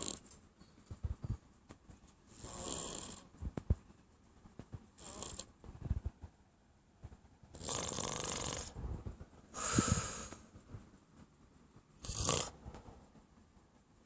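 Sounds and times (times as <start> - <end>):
person snoring: 2.4 - 3.2, 7.6 - 8.8, 9.6 - 10.4, 12.0 - 12.6.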